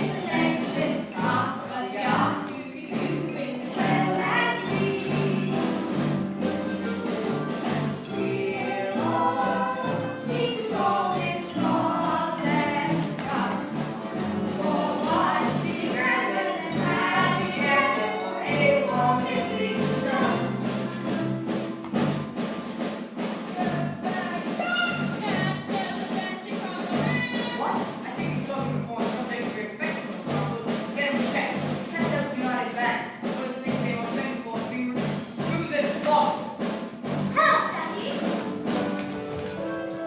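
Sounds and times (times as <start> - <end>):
voices singing together: 0.0 - 21.4, 23.5 - 28.4
instrumental accompaniment: 0.0 - 40.0.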